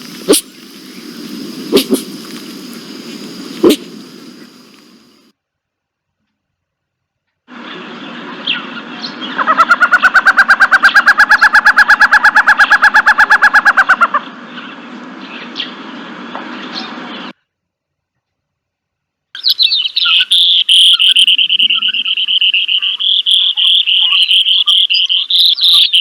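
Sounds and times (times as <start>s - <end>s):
bird calling rapid even notes: 0.0s - 5.2s, 9.4s - 14.2s
faint calls of other birds: 0.0s - 5.3s, 19.4s - 26.0s.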